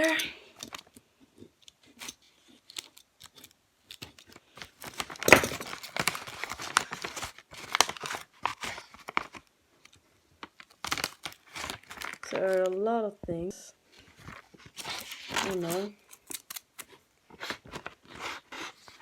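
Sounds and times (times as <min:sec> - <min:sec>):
small rustles and clicks: 0:00.0 - 0:12.9
packaging tearing and crinkling: 0:01.8 - 0:12.8, 0:14.0 - 0:19.0.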